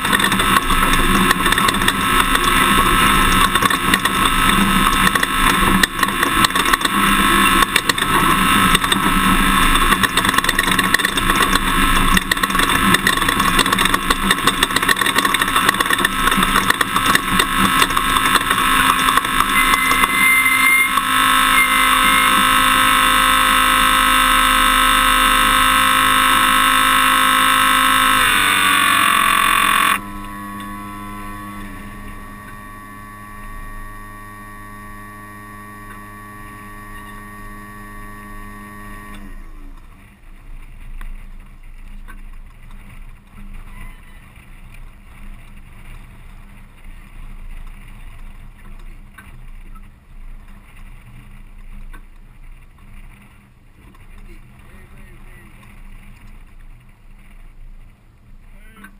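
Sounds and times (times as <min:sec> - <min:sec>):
rough noise with knocks: 0:00.0 - 0:32.8
truck engine revving: 0:00.0 - 0:40.0.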